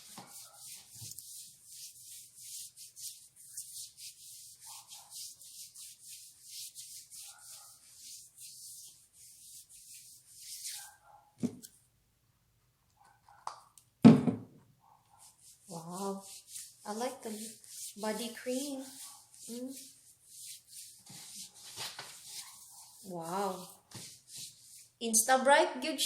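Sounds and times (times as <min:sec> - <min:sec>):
hands rubbing cream into skin: 0:00.0 - 0:11.0, 0:15.2 - 0:25.0.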